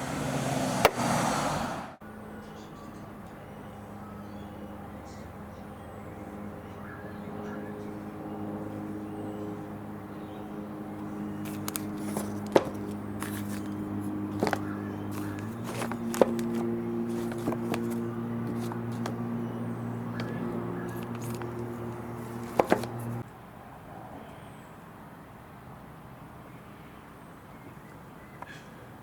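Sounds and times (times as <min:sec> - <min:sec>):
steady low hum: 0:04.7 - 0:23.2.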